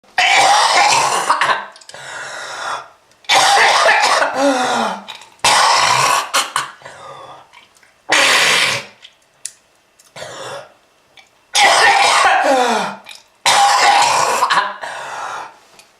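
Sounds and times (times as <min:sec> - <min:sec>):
person coughing: 0:00.2 - 0:01.7, 0:03.3 - 0:06.9, 0:11.6 - 0:15.0.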